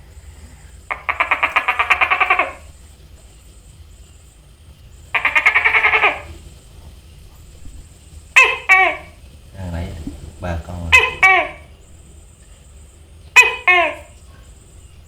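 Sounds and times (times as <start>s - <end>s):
gecko calling in fast pulses: 0.0s - 15.0s.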